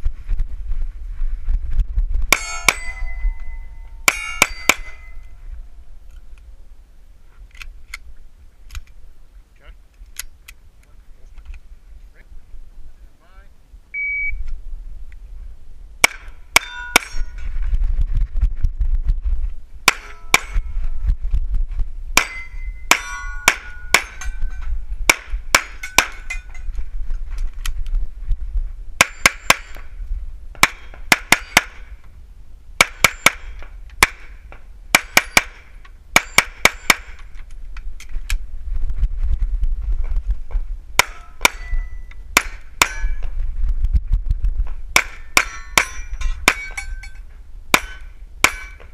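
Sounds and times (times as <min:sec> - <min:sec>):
metallic ring of steel targets: 0:02.3 - 0:05.4, 0:16.0 - 0:17.5, 0:19.9 - 0:21.0, 0:22.2 - 0:26.8, 0:29.0 - 0:29.9, 0:30.6 - 0:31.9, 0:32.8 - 0:34.3, 0:35.0 - 0:37.2, 0:41.0 - 0:43.3, 0:45.0 - 0:48.9.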